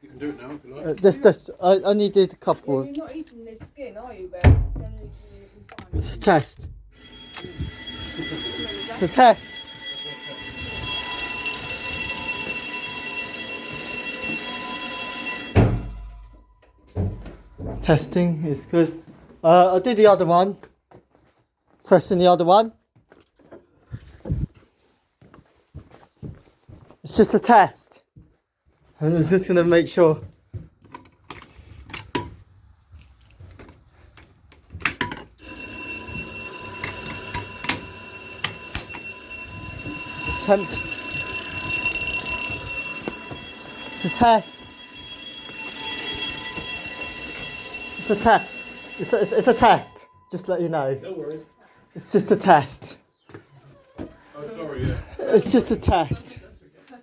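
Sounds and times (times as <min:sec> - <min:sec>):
fire alarm continuous tone: 0:04.4 - 0:18.7, 0:35.4 - 0:53.5.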